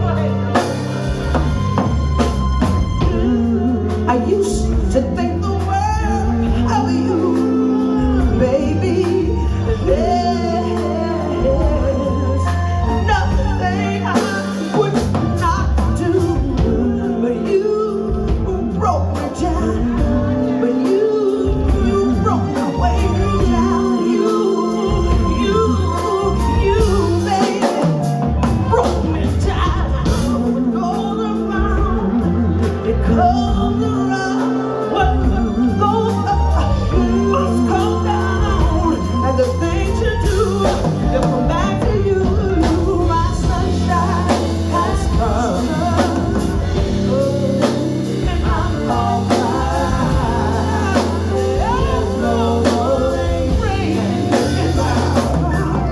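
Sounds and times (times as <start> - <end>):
bass line: 0.0 - 55.9
person singing: 0.0 - 55.9
soul band playing: 0.0 - 55.9
drum beat: 40.1 - 55.9.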